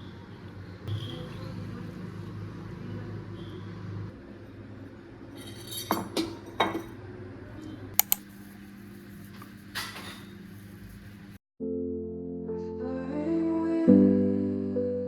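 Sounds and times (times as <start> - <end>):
dishes and utensils clinking: 5.4 - 7.0, 9.7 - 10.4.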